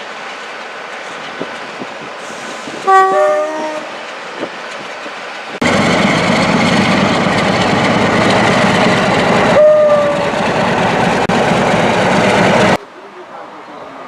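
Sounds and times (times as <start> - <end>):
train rushing past: 0.0 - 12.8
train horn blast: 2.8 - 4.0, 9.5 - 10.3.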